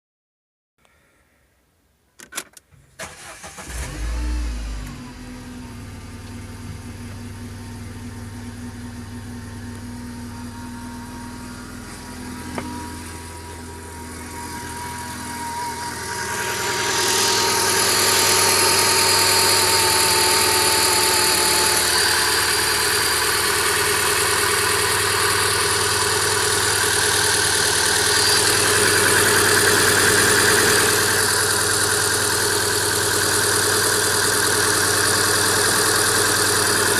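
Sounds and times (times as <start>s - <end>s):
car engine idling: 3.0s - 36.9s.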